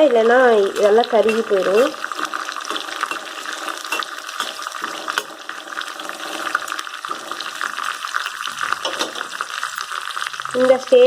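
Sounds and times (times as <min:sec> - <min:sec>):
leaves sizzling in frying oil: 0:00.0 - 0:11.0.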